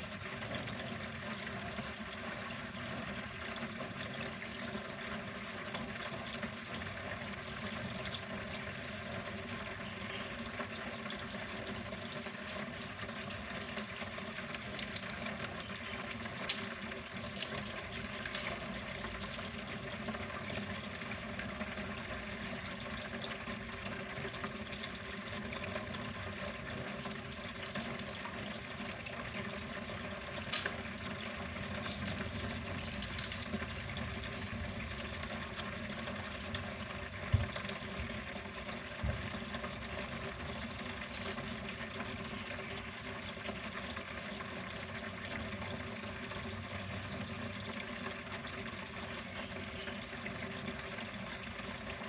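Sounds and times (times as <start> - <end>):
water flowing: 0.0 - 52.0.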